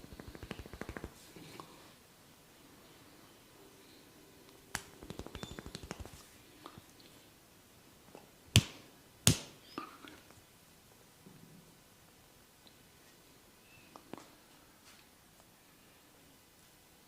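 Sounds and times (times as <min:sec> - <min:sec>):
loud sharp cracks: 0:08.6 - 0:09.6.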